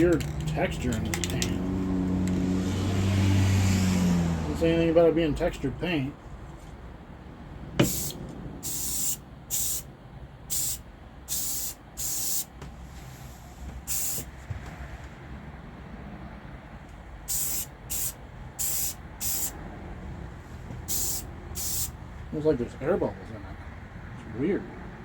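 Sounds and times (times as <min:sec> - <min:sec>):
spray paint can hissing: 0:07.8 - 0:09.9, 0:10.5 - 0:12.5, 0:13.9 - 0:14.3, 0:17.3 - 0:19.6, 0:20.8 - 0:22.0.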